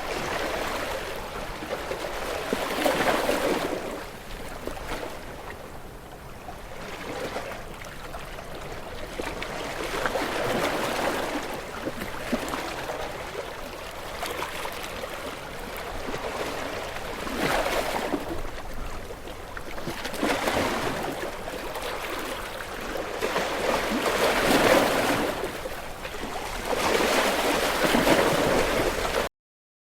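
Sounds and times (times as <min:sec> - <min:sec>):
ocean waves breaking against rocks: 0:00.0 - 0:29.3.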